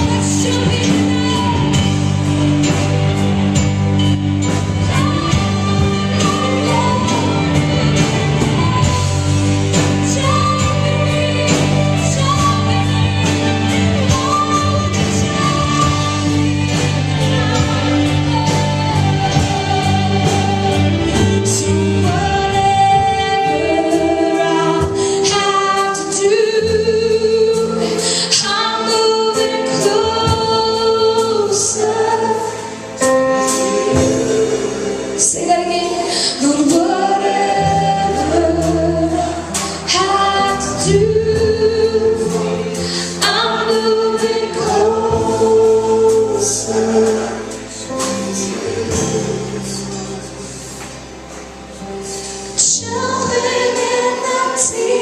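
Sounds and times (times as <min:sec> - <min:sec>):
woman singing: 0:00.0 - 0:03.6, 0:04.4 - 0:50.2, 0:52.6 - 0:55.0
people singing along: 0:00.0 - 0:51.1, 0:52.6 - 0:55.0
band playing worship music: 0:00.0 - 0:55.0.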